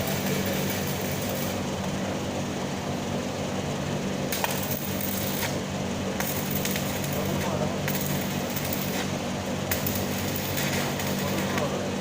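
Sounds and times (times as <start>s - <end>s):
welding arc crackling: 0.0s - 1.9s, 4.3s - 12.0s.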